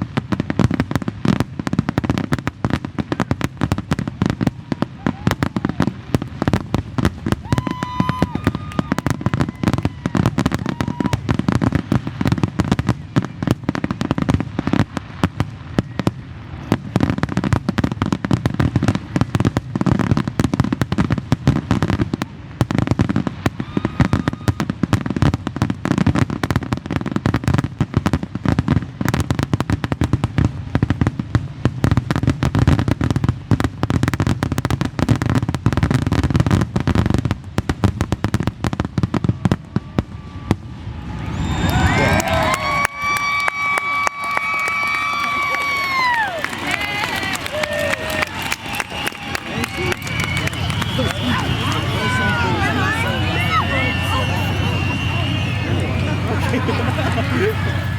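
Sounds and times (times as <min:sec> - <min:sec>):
fireworks bangs and crackles: 0:00.0 - 0:57.9
firework shell whistle: 0:39.2 - 0:46.2, 0:47.9 - 0:57.9.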